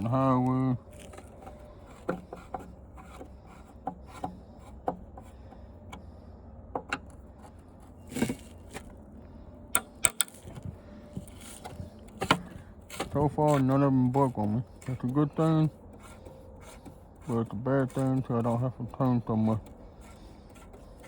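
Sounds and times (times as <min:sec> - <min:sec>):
highway traffic drone: 0:00.0 - 0:21.0
screwdriver clicks and scrapes: 0:09.7 - 0:21.0.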